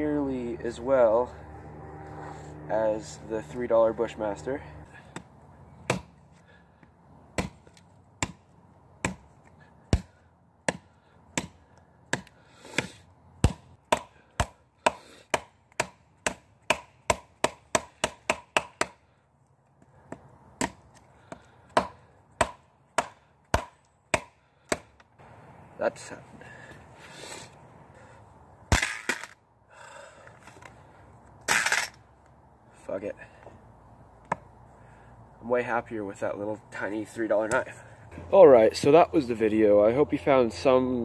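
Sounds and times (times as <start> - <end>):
knife chopping into wood: 5.1 - 6.2, 7.4 - 8.4, 9.0 - 9.3, 9.9 - 19.0, 20.1 - 24.9.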